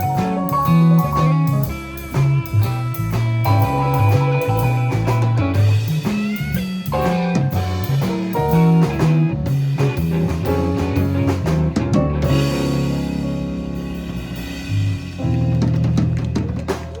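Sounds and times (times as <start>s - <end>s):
lead guitar with bent notes: 0.0s - 13.0s
drum kit: 0.0s - 17.0s
walking bass line: 0.0s - 17.0s.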